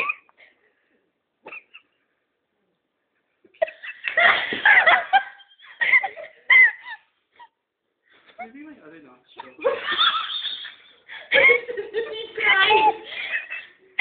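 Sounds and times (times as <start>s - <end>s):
people giggling: 3.5s - 7.6s, 9.4s - 14.0s.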